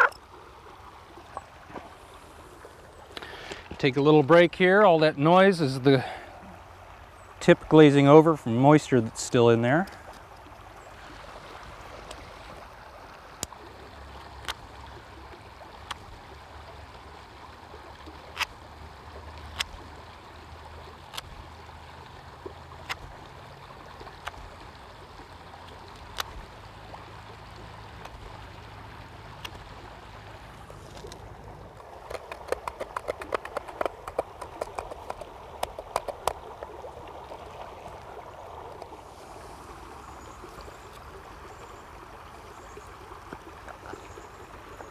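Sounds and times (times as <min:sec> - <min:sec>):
rushing like running water: 0:00.0 - 0:44.9
sharp clicks: 0:32.0 - 0:36.4.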